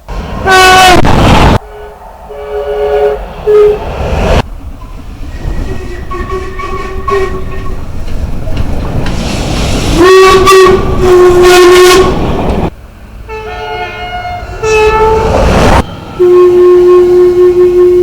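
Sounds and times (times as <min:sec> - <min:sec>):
moving train rumble: 0:00.0 - 0:18.0
distant train horn: 0:00.4 - 0:01.0, 0:01.6 - 0:03.9, 0:04.8 - 0:07.8, 0:10.0 - 0:12.2, 0:13.2 - 0:18.0
train two-tone horn: 0:00.4 - 0:01.0, 0:01.6 - 0:03.9, 0:05.3 - 0:07.8, 0:10.0 - 0:12.2, 0:13.3 - 0:15.5, 0:16.1 - 0:18.0.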